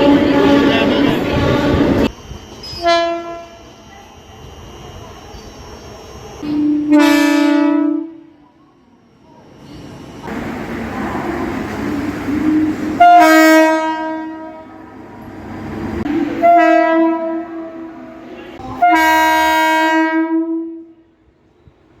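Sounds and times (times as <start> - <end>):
train two-tone horn blasts: 0.0 - 2.1, 2.7 - 3.7, 6.4 - 8.4, 12.2 - 14.9, 16.0 - 21.1
train running rumble: 0.0 - 7.0, 10.2 - 20.0.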